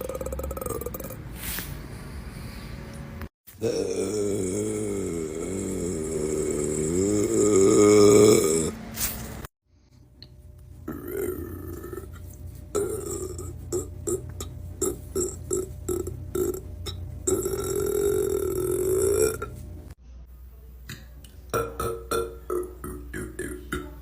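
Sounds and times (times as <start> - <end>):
man burping: 0.0 - 1.2, 3.6 - 8.8, 10.9 - 19.6, 21.6 - 23.8.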